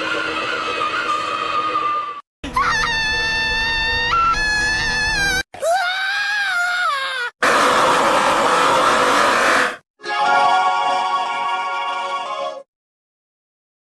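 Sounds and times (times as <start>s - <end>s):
cartoon screams: 2.4s - 9.6s.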